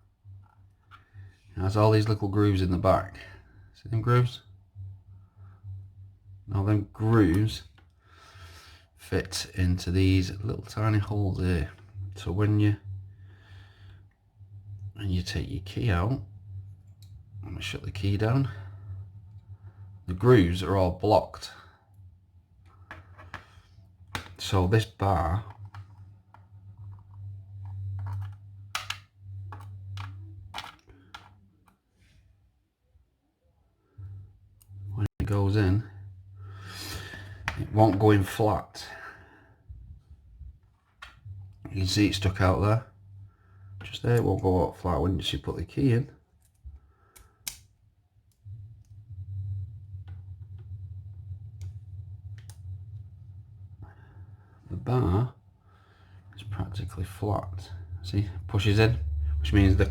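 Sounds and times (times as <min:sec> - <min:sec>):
low hum: 0:00.0 - 0:59.9
metallic clicks of lock parts: 0:47.2 - 0:47.7.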